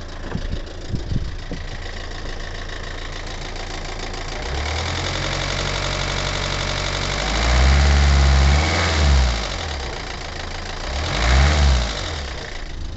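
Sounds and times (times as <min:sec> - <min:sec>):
car engine revving with ticking: 0:00.0 - 0:12.9.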